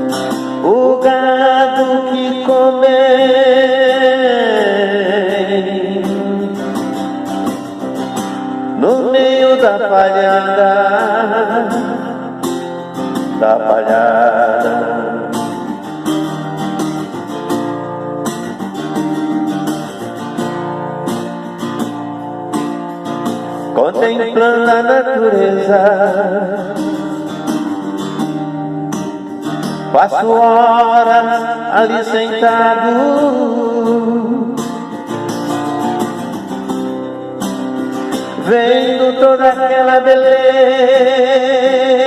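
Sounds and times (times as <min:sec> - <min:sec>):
person singing: 0:00.0 - 0:07.8, 0:08.8 - 0:15.9, 0:23.7 - 0:28.1, 0:29.7 - 0:35.7, 0:38.0 - 0:42.0
acoustic guitar strumming: 0:00.0 - 0:42.0.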